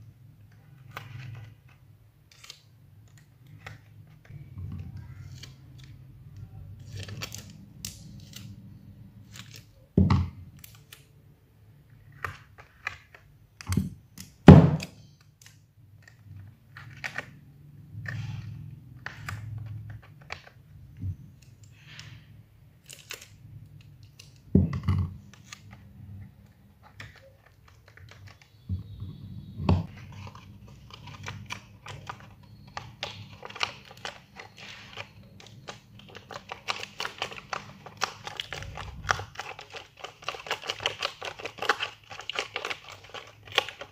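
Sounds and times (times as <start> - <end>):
crinkling: 22.8 - 43.9.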